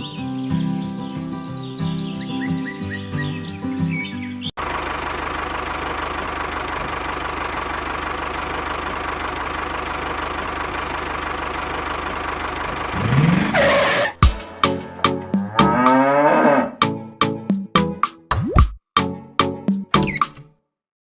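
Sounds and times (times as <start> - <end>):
tractor engine idling: 4.6 - 15.4
cow mooing: 14.5 - 16.8.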